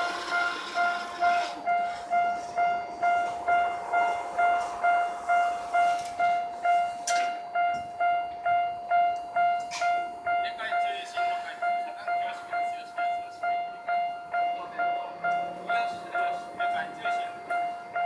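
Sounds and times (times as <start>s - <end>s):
level crossing warning bell: 0.0s - 18.0s.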